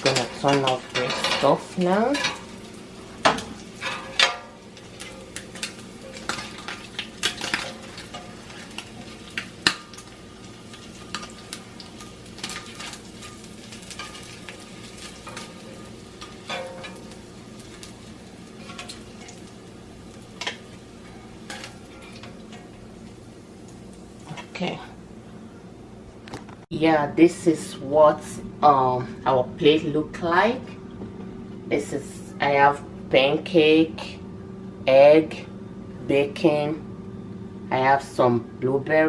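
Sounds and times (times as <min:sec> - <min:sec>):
utensils clinking on pans and plates: 0:00.0 - 0:02.6, 0:03.2 - 0:19.5, 0:20.1 - 0:22.8
pan sizzling faintly: 0:00.0 - 0:26.6
steady low hum: 0:00.0 - 0:39.0.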